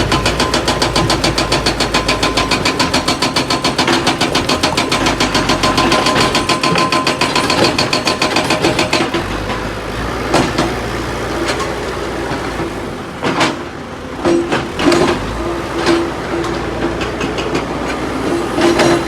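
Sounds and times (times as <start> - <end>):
knocks of stone or steel: 0.0 - 9.6
hydraulic rock breaker hammering: 0.0 - 19.0.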